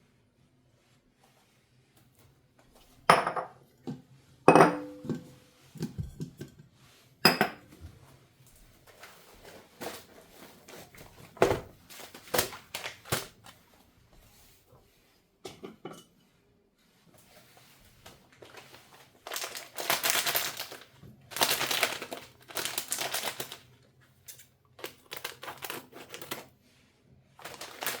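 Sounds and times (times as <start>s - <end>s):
dishes and utensils clinking: 4.5s - 6.5s, 7.2s - 7.7s.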